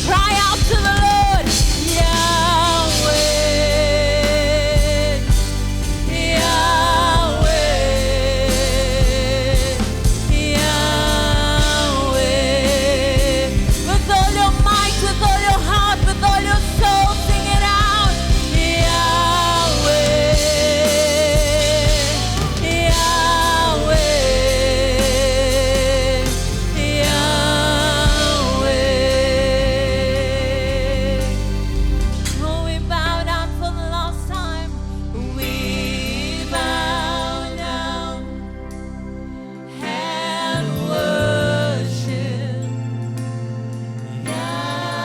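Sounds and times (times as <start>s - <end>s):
instrumental accompaniment: 0.0s - 33.0s
person singing with vibrato: 0.0s - 45.0s.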